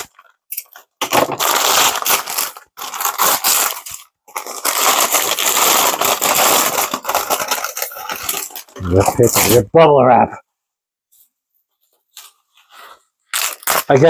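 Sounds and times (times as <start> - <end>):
paper and bubble wrap crackling: 0.0 - 9.7, 11.8 - 14.0.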